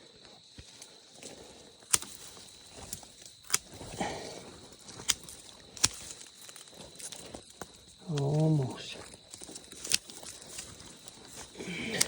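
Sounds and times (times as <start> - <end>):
brush and twigs rustling: 0.0 - 12.0
pruning clippers snipping: 1.9 - 4.0, 4.9 - 7.2, 9.3 - 10.8.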